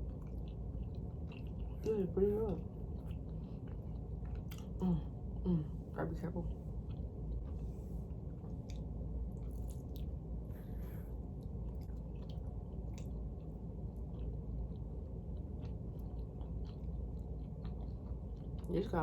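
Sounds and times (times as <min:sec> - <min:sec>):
person chewing food: 0:00.0 - 0:01.9, 0:02.6 - 0:05.4, 0:06.5 - 0:18.7
low background hum: 0:00.0 - 0:19.0.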